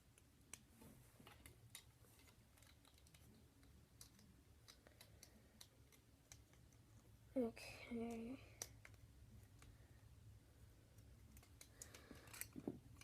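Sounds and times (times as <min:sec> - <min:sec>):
low room hum: 0:00.0 - 0:13.0
plastic bricks clicking together: 0:00.2 - 0:06.8, 0:11.1 - 0:13.0.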